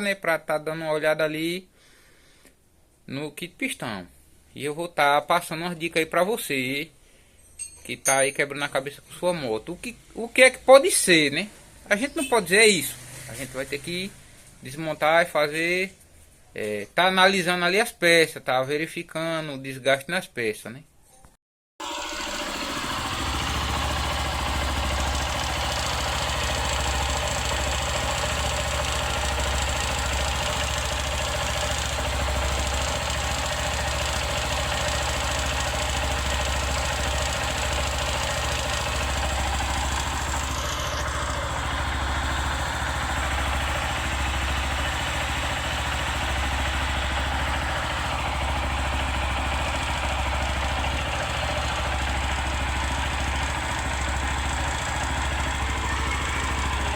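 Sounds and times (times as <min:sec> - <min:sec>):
light engine knocking: 0:21.8 - 0:56.9
motorcycle engine idling: 0:21.8 - 0:56.9.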